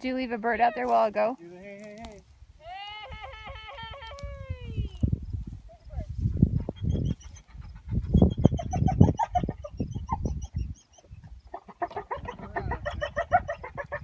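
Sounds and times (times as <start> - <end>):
bird clucking calls: 6.4 - 14.0.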